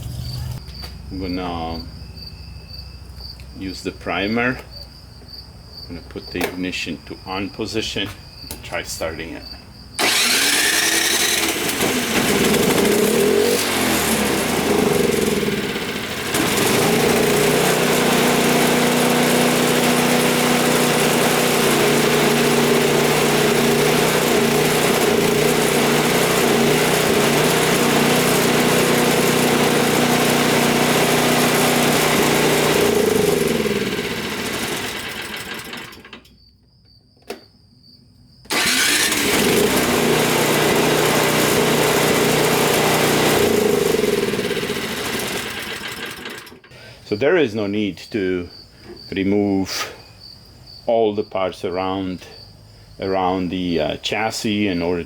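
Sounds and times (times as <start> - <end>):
snowblower engine running: 10.0 - 36.2, 38.5 - 47.0.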